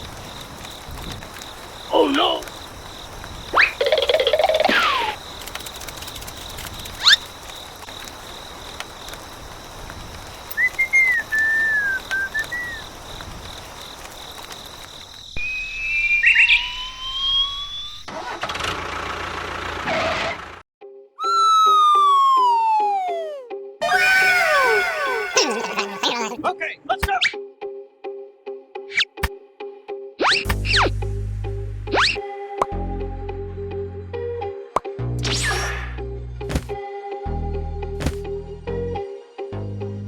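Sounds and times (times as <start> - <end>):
whistle sound effects: 10.5 - 12.8, 15.4 - 18.1, 21.2 - 25.4, 35.2 - 36.0.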